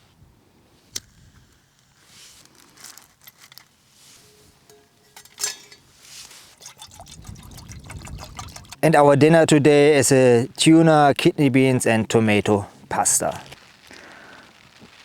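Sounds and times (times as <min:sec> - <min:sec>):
ringing metal clink: 0:04.2 - 0:06.0.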